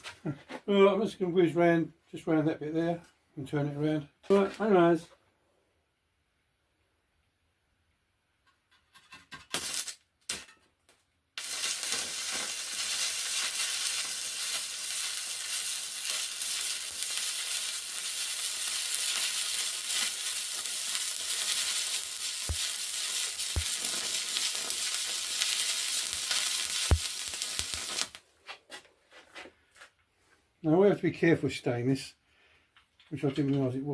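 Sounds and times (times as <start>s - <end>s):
welding arc crackling: 9.5s - 10.0s, 11.4s - 28.2s
arc striking scratches: 21.3s - 28.2s.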